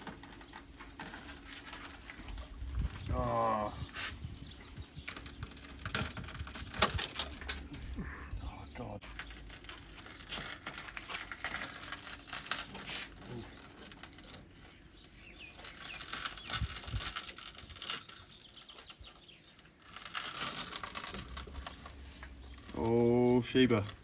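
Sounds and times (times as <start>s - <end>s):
broken glass crackling and tinkling: 9.0s - 24.0s.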